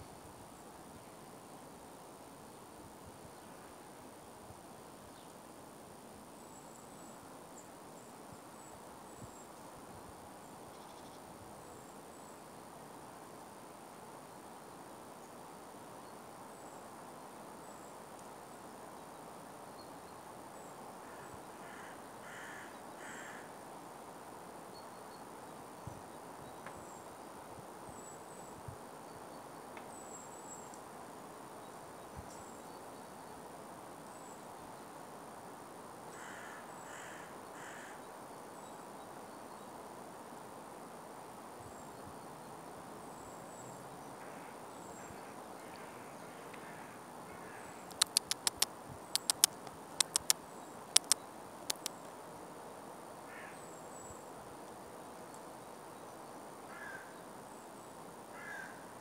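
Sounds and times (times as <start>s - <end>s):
steady outdoor hiss: 0.0s - 59.0s
crow cawing: 21.0s - 23.5s, 36.2s - 38.0s, 45.7s - 47.8s, 53.3s - 53.6s, 56.7s - 57.1s, 58.3s - 58.8s
faint high chirps: 47.9s - 50.4s, 51.0s - 52.0s
soft clicks: 47.9s - 52.1s.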